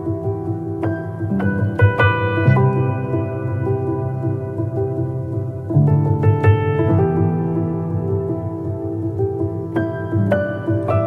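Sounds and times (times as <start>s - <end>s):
soft piano chords: 0.0s - 11.0s.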